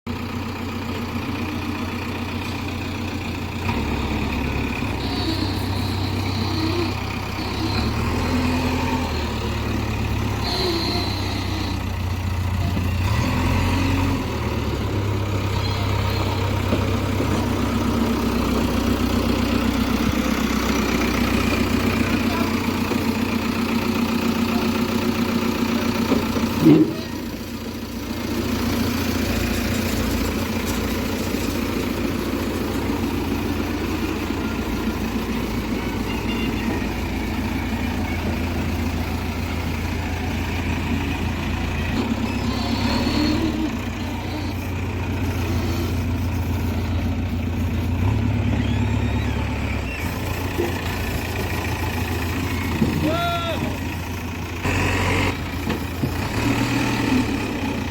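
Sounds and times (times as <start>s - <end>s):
diesel engine running: 0.1s - 57.9s.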